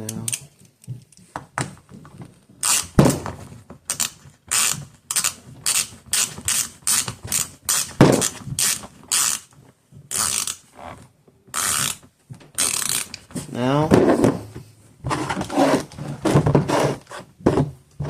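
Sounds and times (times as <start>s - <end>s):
ratcheting hand tool: 2.6s - 3.0s, 3.9s - 10.7s, 11.5s - 12.0s, 12.6s - 13.3s.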